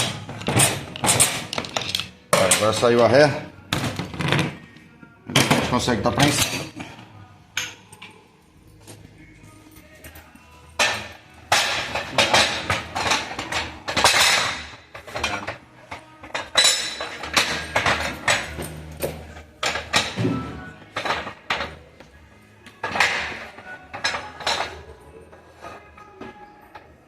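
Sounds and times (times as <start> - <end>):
steel parts and tools clanking: 0.0 - 3.0, 9.8 - 21.9, 22.8 - 27.0.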